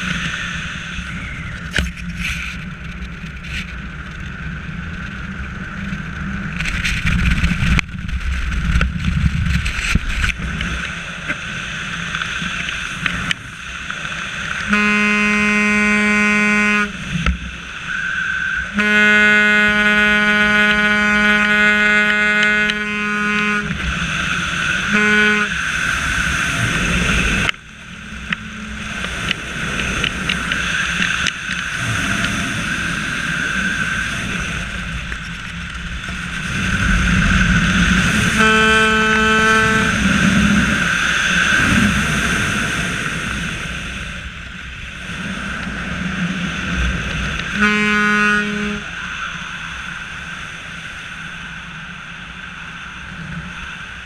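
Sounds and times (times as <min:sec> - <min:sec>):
vehicle running with high whine: 0:00.0 - 0:54.0
vehicle horn blasts: 0:14.6 - 0:17.1, 0:17.9 - 0:23.8, 0:24.8 - 0:25.7, 0:38.1 - 0:40.7, 0:47.5 - 0:49.0.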